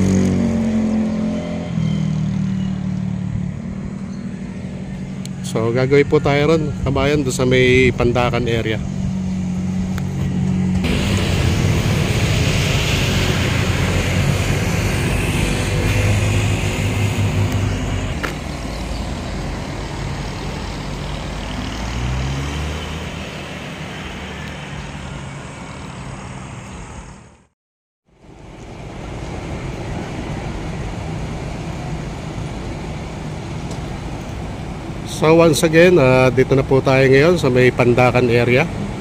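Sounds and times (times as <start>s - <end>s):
engine revving: 0.0s - 5.0s, 7.6s - 27.0s
heavy vehicle engine with road noise: 0.0s - 39.0s.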